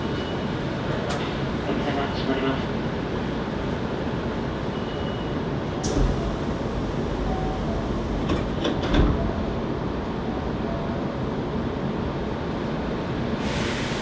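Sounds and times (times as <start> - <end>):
train wheels and motors rumbling: 2.8 - 14.0.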